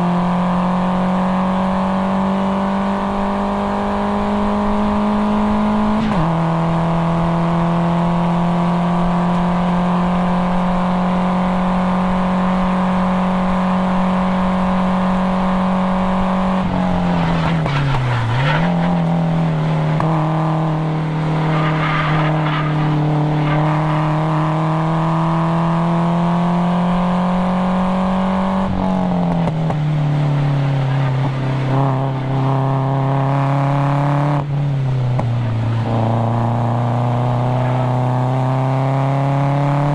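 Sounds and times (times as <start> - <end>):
car engine revving on track: 0.0 - 39.9.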